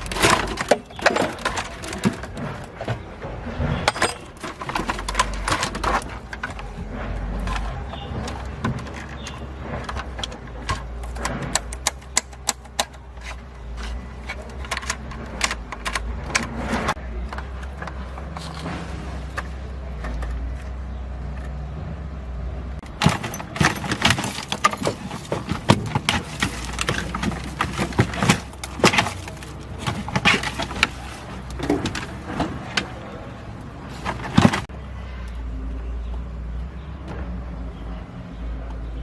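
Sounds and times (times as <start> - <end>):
metallic clinks and clanks: 3.8 - 6.7, 22.8 - 32.2.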